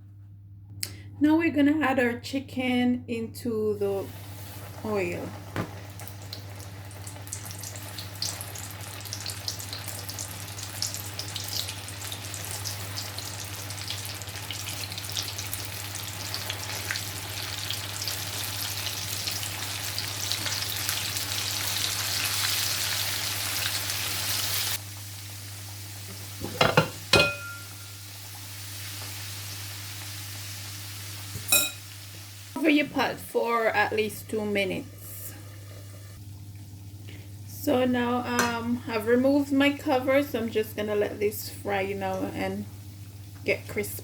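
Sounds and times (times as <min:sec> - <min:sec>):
food deep-frying in oil: 0:04.1 - 0:32.6.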